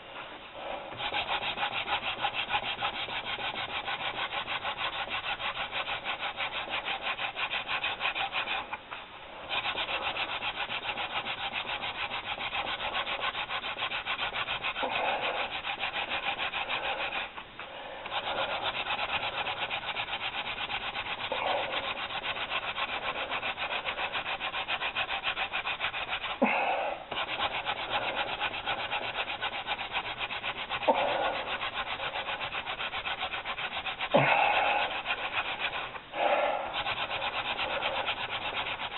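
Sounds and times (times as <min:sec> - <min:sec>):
hand drill scratchy rubbing: 0:00.0 - 0:38.9.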